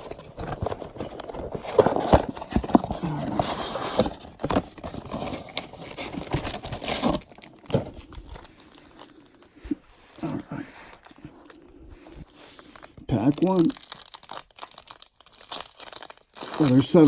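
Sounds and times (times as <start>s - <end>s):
cardboard knocking and scraping: 0.0s - 8.0s
packaging crinkling: 0.0s - 17.0s.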